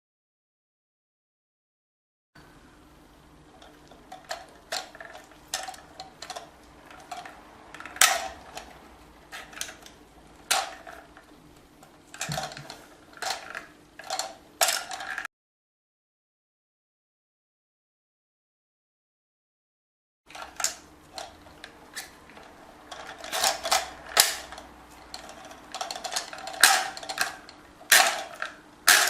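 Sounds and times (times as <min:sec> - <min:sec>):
faint steady hum: 0:02.4 - 0:15.3
plastic valve parts clicking: 0:12.1 - 0:15.2, 0:20.3 - 0:29.0.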